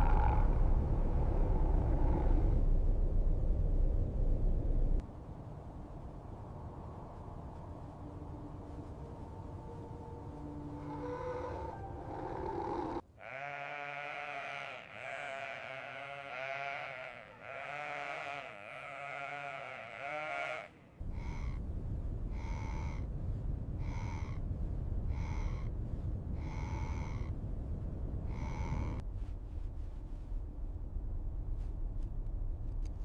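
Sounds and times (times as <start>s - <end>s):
low wind rumble: 0.0s - 33.0s
sheep bleating: 10.8s - 20.8s.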